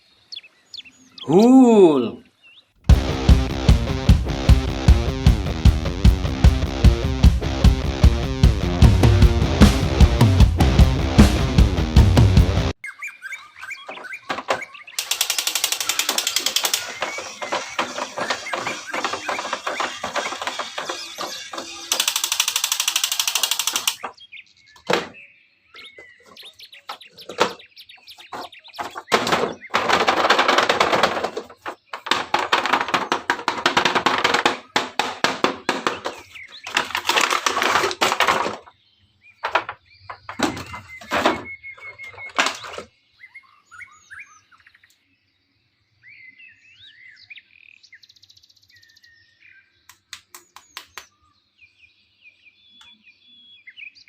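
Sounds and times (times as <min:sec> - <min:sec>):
birds chirping faintly: 0:00.0 - 0:02.9, 0:12.7 - 0:54.0
rustling and crackling: 0:13.9 - 0:24.2, 0:25.8 - 0:38.7
sharp clicks and knocks: 0:13.9 - 0:24.2, 0:28.2 - 0:38.7, 0:39.4 - 0:42.8.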